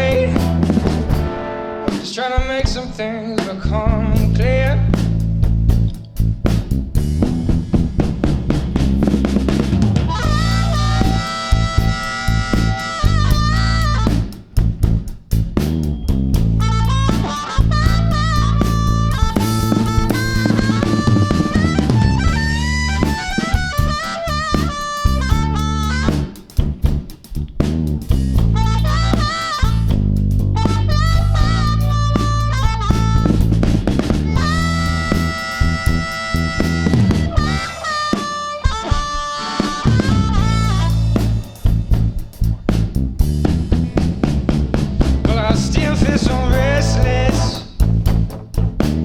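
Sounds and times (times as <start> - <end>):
steady bass line: 0.0 - 2.0, 3.6 - 38.0, 39.8 - 49.0
lead instrument soloing: 0.0 - 2.1, 9.8 - 14.4, 16.6 - 26.6, 28.5 - 42.2
drum kit snare and rimshot hits: 0.0 - 49.0.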